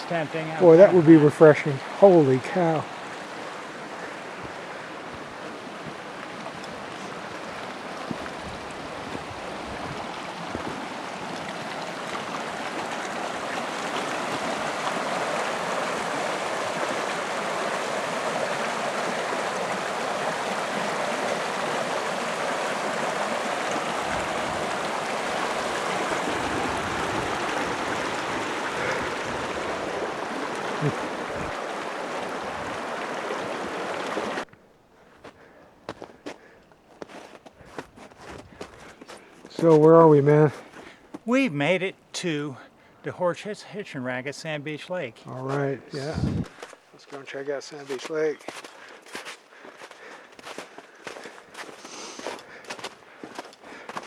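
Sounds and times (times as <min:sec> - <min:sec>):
creek water rushing: 0:00.0 - 0:54.0.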